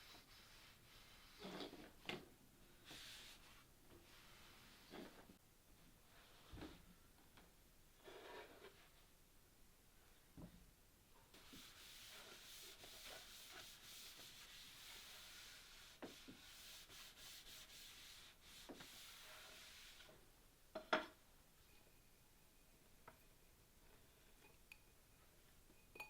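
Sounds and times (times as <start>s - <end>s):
hand scrubbing surface: 0.0s - 2.0s, 2.8s - 5.4s, 11.4s - 20.2s.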